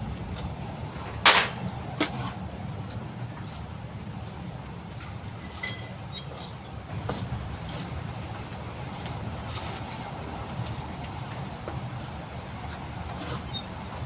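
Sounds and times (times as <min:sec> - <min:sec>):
ringing metal clink: 0:05.4 - 0:06.5.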